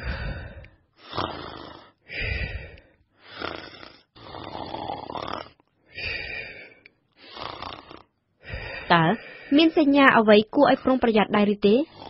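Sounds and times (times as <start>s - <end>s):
person snoring: 0.0s - 8.8s.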